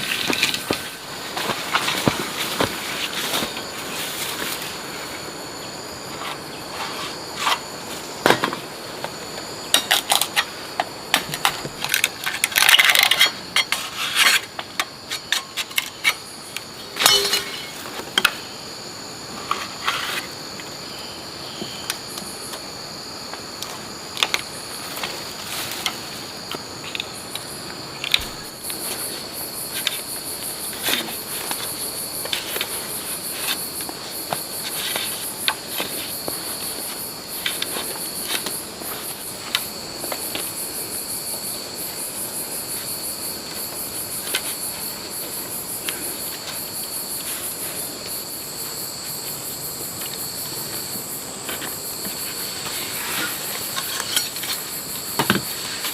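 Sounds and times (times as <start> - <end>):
insects droning: 0.0 - 55.9.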